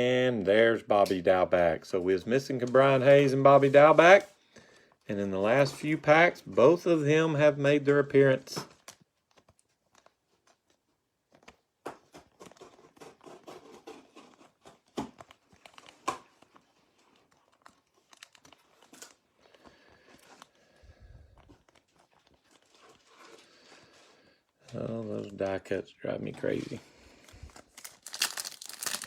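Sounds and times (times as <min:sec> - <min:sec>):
wrapper crinkling and tearing: 0:12.3 - 0:23.8, 0:26.5 - 0:29.0.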